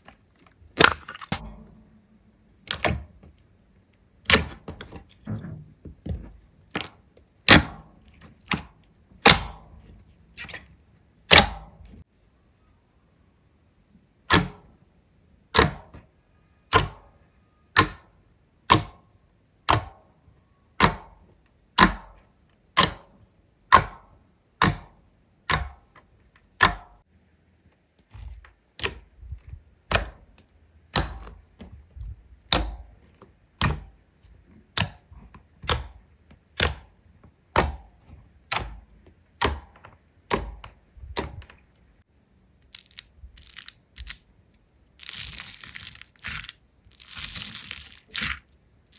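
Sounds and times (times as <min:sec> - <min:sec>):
faint low hum: 0:00.0 - 0:48.9
slime popping: 0:45.0 - 0:48.4.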